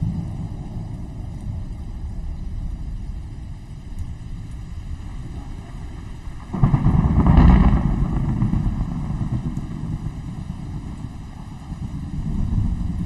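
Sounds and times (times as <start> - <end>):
low storm rumble: 0.0 - 13.0
thunder crack: 4.8 - 13.0.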